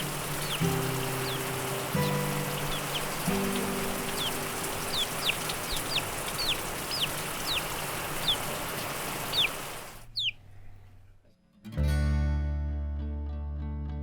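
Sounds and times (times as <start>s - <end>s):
steady background hiss: 0.0s - 10.2s
bird chirping: 0.0s - 10.4s.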